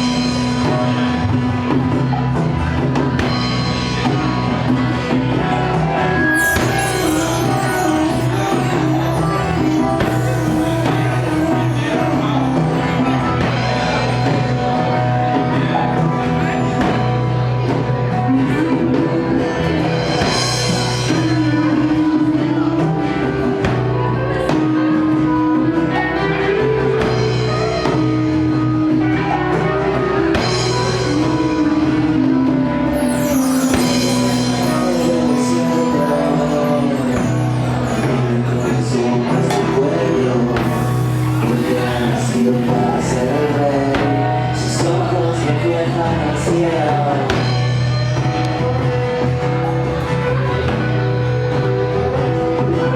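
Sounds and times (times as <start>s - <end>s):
live rock band playing: 0.0s - 52.9s
sustained guitar notes: 3.2s - 18.1s.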